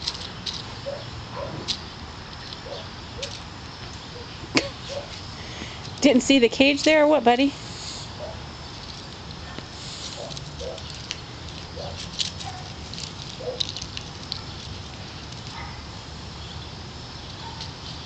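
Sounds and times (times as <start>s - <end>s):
kittens scuffling and pattering: 8.7s - 15.9s.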